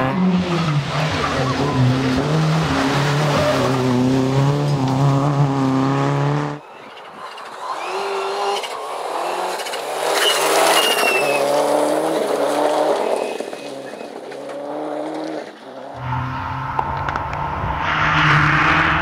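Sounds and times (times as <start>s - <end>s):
rally car engine revving: 0.0s - 6.6s, 7.3s - 19.0s
rally car approaching: 0.0s - 19.0s
high squeal: 10.1s - 11.5s.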